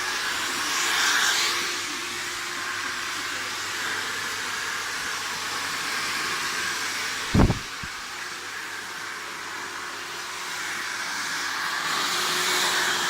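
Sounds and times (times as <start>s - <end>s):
hair dryer blowing: 0.0s - 13.0s
loud low thump: 7.3s - 7.9s.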